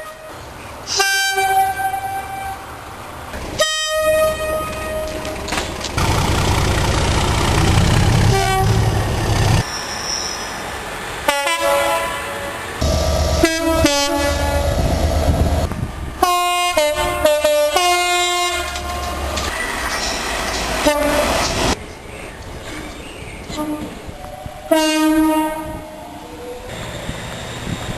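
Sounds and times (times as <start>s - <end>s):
locomotive two-tone air horns: 0.0s - 2.6s, 3.6s - 5.4s, 8.2s - 9.0s, 11.3s - 14.9s, 16.2s - 19.2s, 20.8s - 21.4s, 24.7s - 26.0s
train passing with low rumble: 0.0s - 27.9s.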